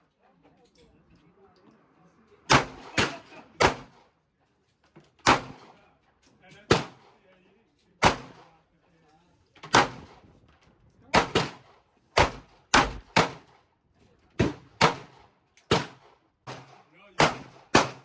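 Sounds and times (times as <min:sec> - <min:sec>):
gunshots with echo: 0:08.0 - 0:08.4, 0:11.2 - 0:13.5, 0:14.5 - 0:18.0.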